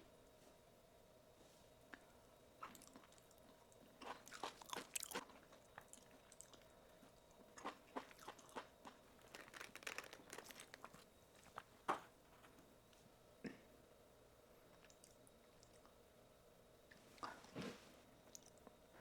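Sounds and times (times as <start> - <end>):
soft crunching clicks: 1.9 - 13.0
person chewing food: 2.6 - 12.6.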